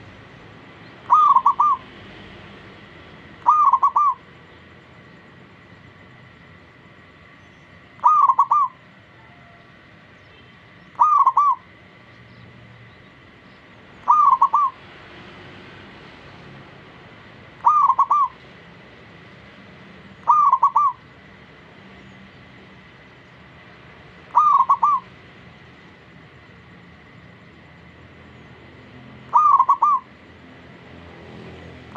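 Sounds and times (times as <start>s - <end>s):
dove cooing: 1.1s - 1.8s, 3.4s - 4.3s, 8.0s - 9.6s, 11.0s - 11.7s, 14.0s - 14.8s, 17.6s - 18.4s, 20.2s - 21.0s, 24.3s - 25.1s, 29.3s - 30.1s.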